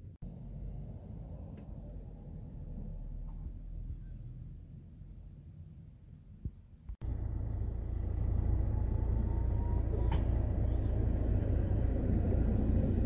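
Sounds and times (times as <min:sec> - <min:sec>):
tram rumbling: 0:07.0 - 0:13.0.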